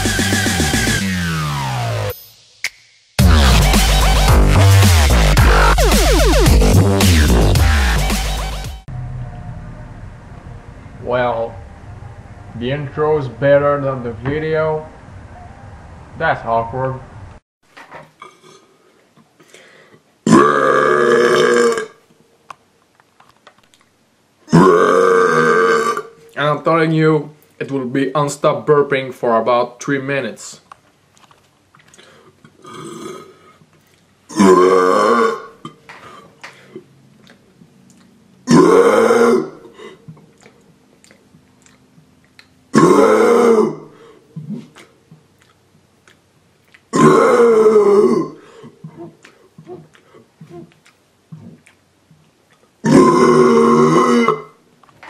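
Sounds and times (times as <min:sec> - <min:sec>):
faint small noises: 0:09.8 - 0:55.0
loud human burp: 0:18.2 - 0:18.8, 0:20.2 - 0:22.0, 0:24.5 - 0:26.2, 0:32.5 - 0:33.6, 0:34.3 - 0:36.8, 0:38.4 - 0:40.0, 0:42.7 - 0:44.6, 0:46.9 - 0:49.1, 0:52.8 - 0:54.6.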